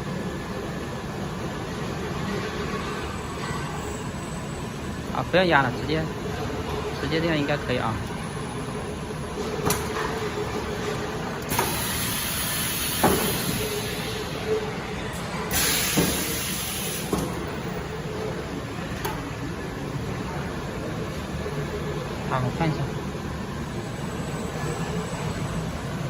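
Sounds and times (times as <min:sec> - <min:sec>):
air hiss: 0:11.5 - 0:14.3, 0:15.5 - 0:17.3.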